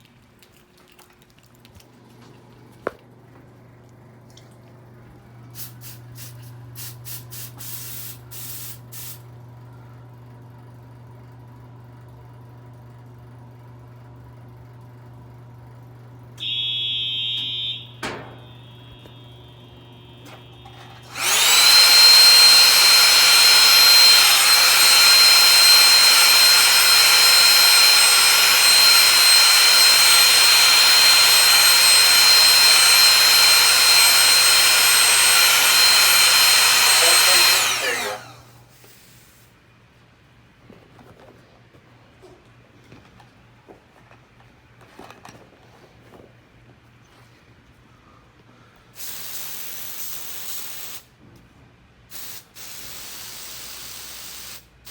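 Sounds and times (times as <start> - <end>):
short high beep: 16.4 - 21.1
fire alarm horn buzzing: 16.4 - 38.2.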